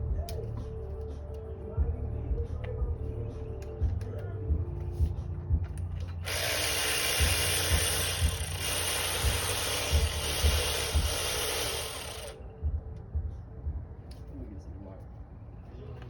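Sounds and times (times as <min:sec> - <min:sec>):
power tool running: 0:06.2 - 0:12.4.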